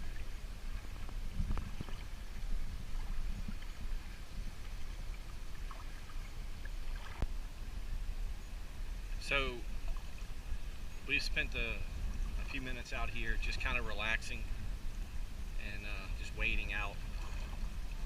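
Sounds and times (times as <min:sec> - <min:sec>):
seawater sloshing around legs: 0:00.0 - 0:07.3, 0:09.6 - 0:13.7, 0:16.9 - 0:18.0
steady low rumble: 0:00.0 - 0:18.0.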